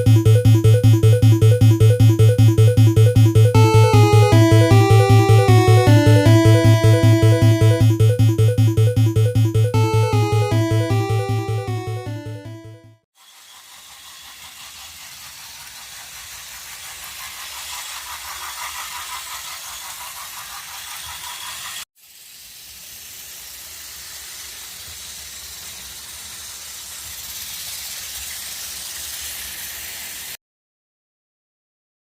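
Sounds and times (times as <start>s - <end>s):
toy train whirring on track: 13.2s - 30.4s.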